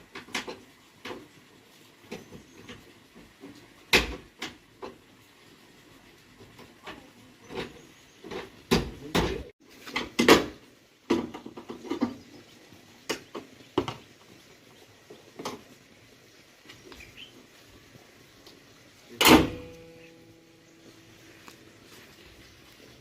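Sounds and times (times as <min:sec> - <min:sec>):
knocks and clunks: 0:02.1 - 0:05.0, 0:06.4 - 0:12.3, 0:19.2 - 0:20.0.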